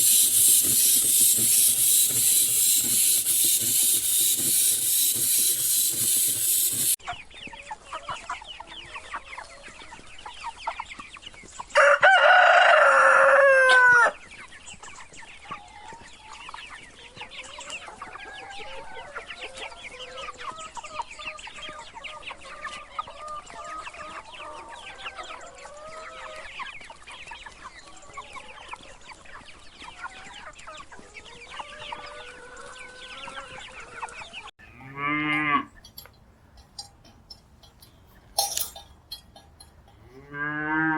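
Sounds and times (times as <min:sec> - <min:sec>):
loud hiss: 0:00.0 - 0:07.0
rooster crowing: 0:11.8 - 0:14.1
chickens clucking: 0:29.3 - 0:40.3.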